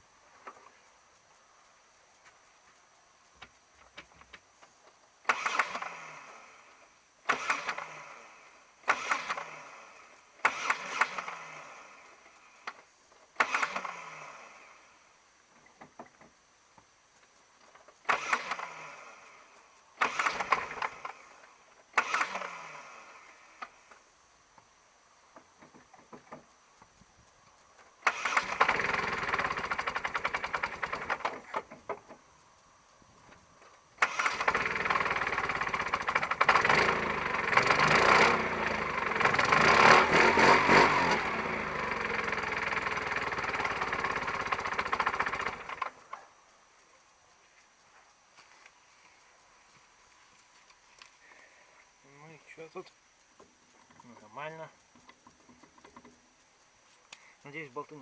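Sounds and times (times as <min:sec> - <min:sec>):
power tool bursts winding down: 0:05.2 - 0:06.7, 0:07.3 - 0:11.9, 0:13.4 - 0:14.8, 0:18.0 - 0:19.3, 0:20.0 - 0:21.2, 0:21.9 - 0:23.4, 0:28.0 - 0:31.5, 0:34.0 - 0:45.9.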